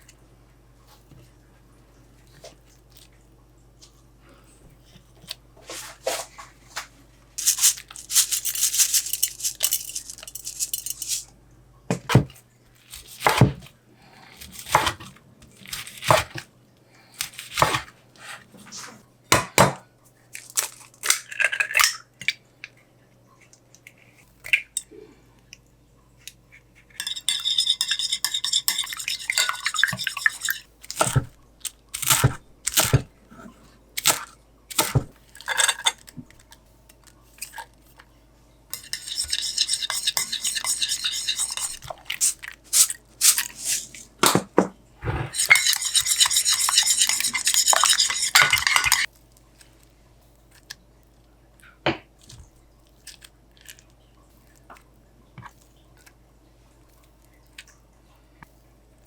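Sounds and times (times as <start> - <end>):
utensil clinking on a dish: 7.4 - 11.3, 27.0 - 31.3, 38.7 - 44.0, 45.3 - 49.1
utensil scraping a dish: 7.4 - 11.3, 26.8 - 31.3, 38.7 - 44.1, 45.0 - 49.1.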